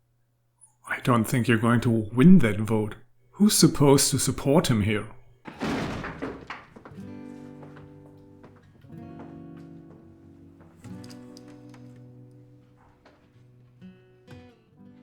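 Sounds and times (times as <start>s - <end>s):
acoustic guitar chords ringing: 6.7s - 15.0s.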